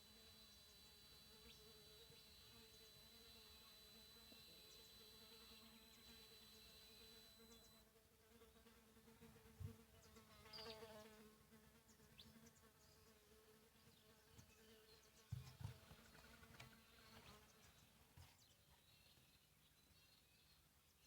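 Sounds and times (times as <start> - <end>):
birds chirping faintly: 0.0 - 7.8
high-pitched electronic whine: 0.0 - 7.8.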